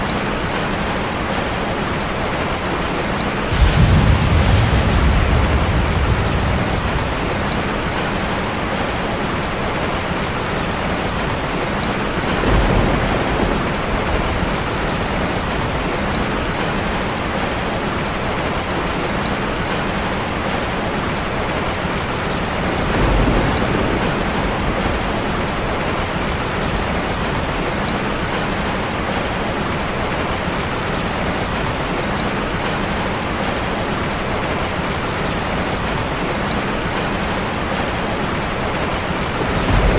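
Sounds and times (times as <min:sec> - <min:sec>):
heavy rain: 0:00.0 - 0:39.9
low rumble: 0:03.5 - 0:08.7.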